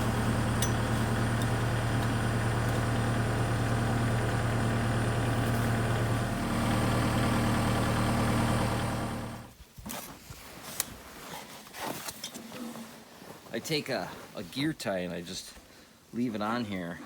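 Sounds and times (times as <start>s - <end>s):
tractor engine idling: 0.0s - 9.5s
sharp clicks and knocks: 0.4s - 3.0s.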